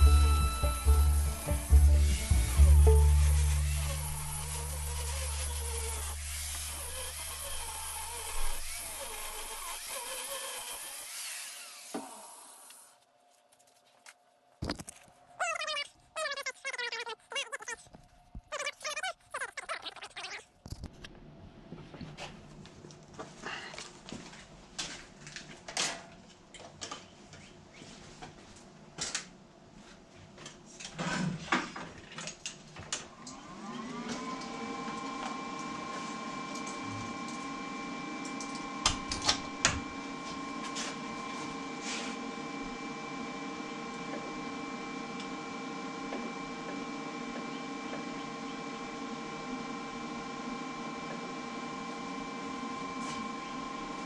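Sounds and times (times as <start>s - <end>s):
electric motor humming: 0.0s - 12.8s.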